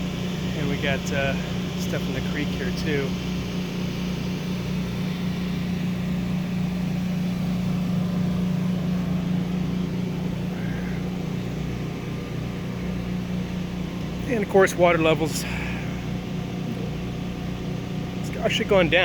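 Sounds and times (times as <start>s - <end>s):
motor running with low hum: 0.0s - 19.0s.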